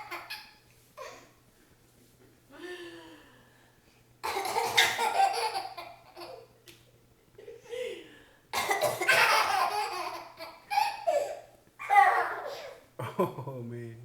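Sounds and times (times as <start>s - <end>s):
baby laughing hysterically: 0.0s - 0.6s, 4.3s - 6.5s, 8.8s - 11.5s
woman coughing: 8.6s - 9.4s.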